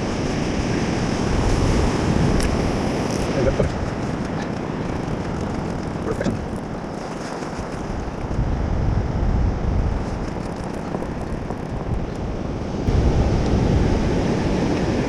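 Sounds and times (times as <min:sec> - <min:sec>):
wind buffeting microphone: 0:07.6 - 0:15.0
surf breaking on shore: 0:12.6 - 0:15.0.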